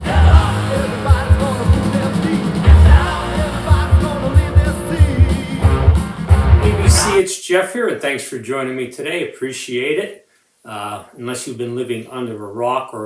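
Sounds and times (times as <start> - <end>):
rock music with singer: 0.0 - 7.2
steady drum beat: 0.0 - 7.2.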